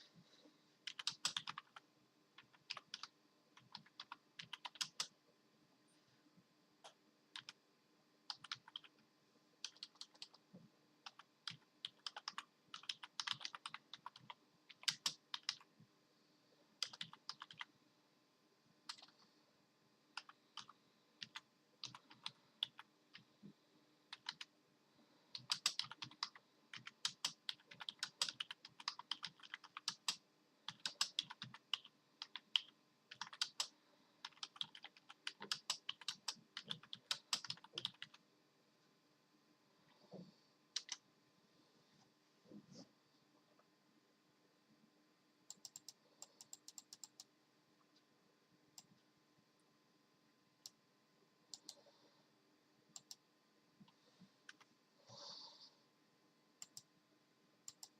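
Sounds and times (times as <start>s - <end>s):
typing on computer keyboard: 0.8s - 1.8s, 2.4s - 5.1s, 7.4s - 7.6s, 8.3s - 9.0s, 9.6s - 10.4s, 11.0s - 15.7s, 16.8s - 17.7s, 18.9s - 19.2s, 20.2s - 23.2s, 24.1s - 24.5s, 25.3s - 38.2s, 40.8s - 41.0s, 45.5s - 47.3s, 57.7s - 57.9s.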